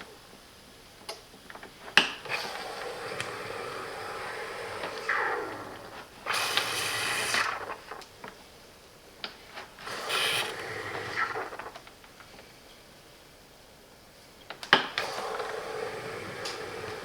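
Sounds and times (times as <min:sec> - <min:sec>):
steam wand hissing: 0:02.3 - 0:08.0, 0:09.7 - 0:11.8.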